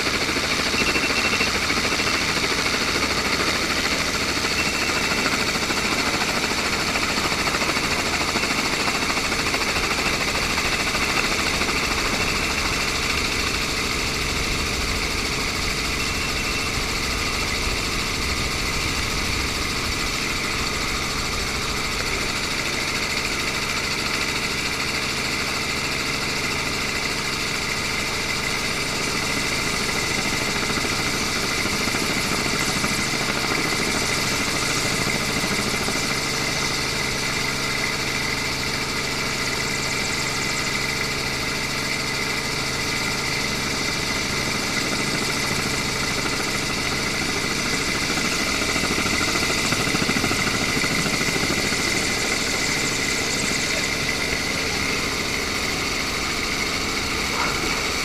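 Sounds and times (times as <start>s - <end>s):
mechanical hum with high whine: 11.9s - 22.6s, 51.8s - 58.0s.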